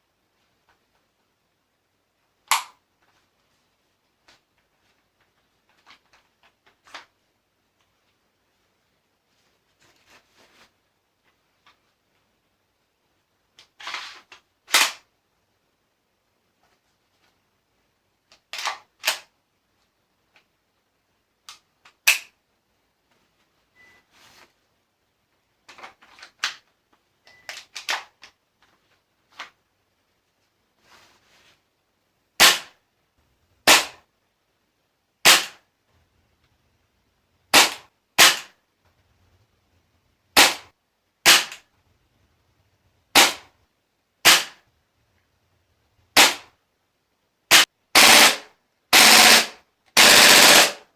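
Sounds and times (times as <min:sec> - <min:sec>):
airsoft gun shots: 0:32.4 - 0:32.8, 0:33.6 - 0:34.0, 0:35.2 - 0:35.6, 0:37.5 - 0:38.6, 0:40.4 - 0:41.6, 0:43.1 - 0:43.5, 0:44.2 - 0:44.6, 0:46.2 - 0:46.5, 0:47.5 - 0:50.9.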